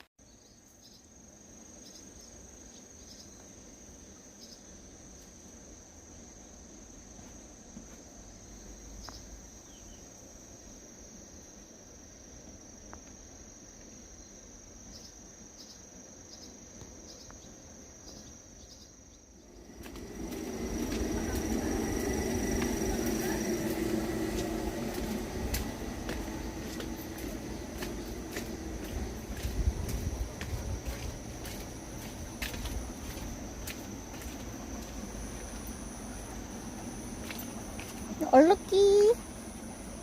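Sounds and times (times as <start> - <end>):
insect trilling: 18.0 - 40.0
low rumble with hum: 19.3 - 40.0.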